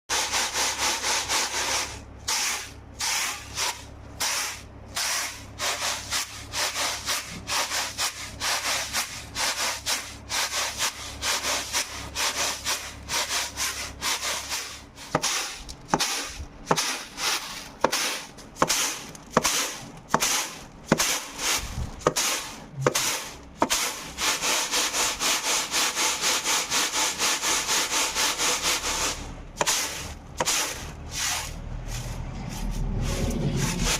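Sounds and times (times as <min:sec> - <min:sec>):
seeds swishing in winnowing basket: 0:00.1 - 0:33.9.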